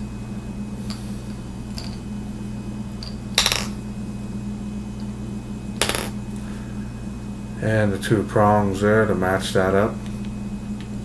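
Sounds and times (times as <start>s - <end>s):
low steady hum: 0.0s - 11.0s
metal parts clinking: 1.7s - 2.0s.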